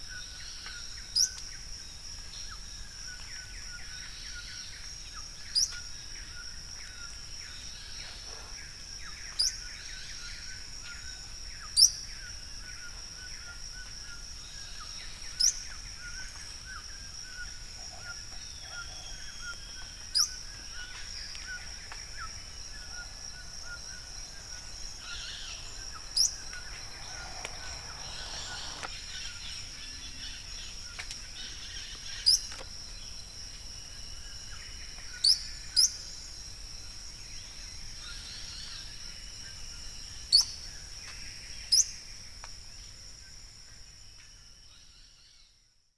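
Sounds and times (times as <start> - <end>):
faint bird chirps: 14.5 - 30.7
steady high hum: 22.2 - 30.1.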